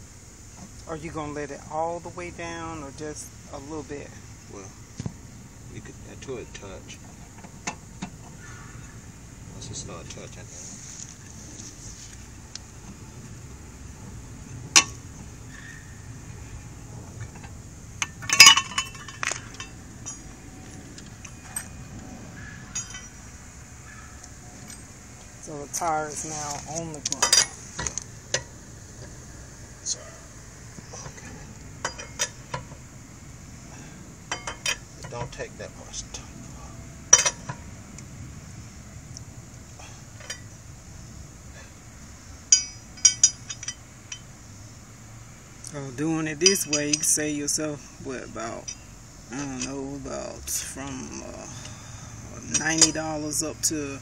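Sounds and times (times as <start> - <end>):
metal hand tools clinking: 17.4 - 21.8, 22.6 - 23.3, 25.7 - 28.4, 31.0 - 32.7, 34.3 - 35.4, 37.1 - 37.6, 42.5 - 44.3, 46.4 - 47.6, 52.4 - 53.5.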